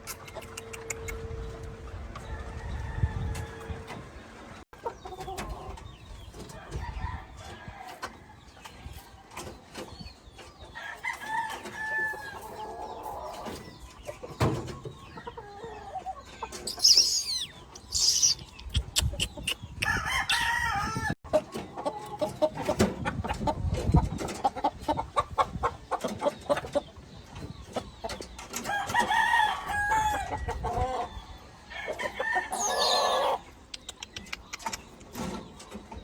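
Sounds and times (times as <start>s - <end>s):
chickens clucking: 0.0s - 36.0s
roosters crowing: 2.1s - 4.3s, 6.4s - 8.5s, 10.7s - 13.8s, 19.8s - 21.2s, 28.6s - 33.5s.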